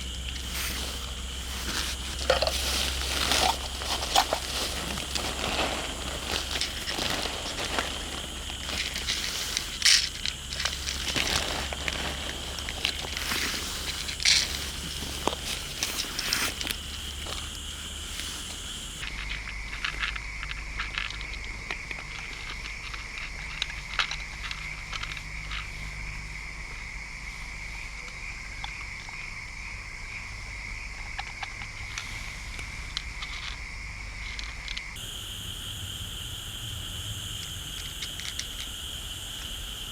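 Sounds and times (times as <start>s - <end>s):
crackling clicks: 0.0s - 21.4s
chorus of frogs or insects: 0.0s - 39.9s.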